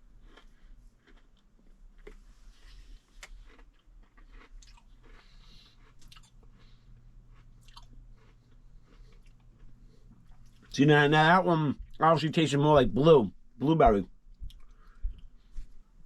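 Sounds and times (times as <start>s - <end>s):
chewing crunchy cookie: 0.0s - 10.8s.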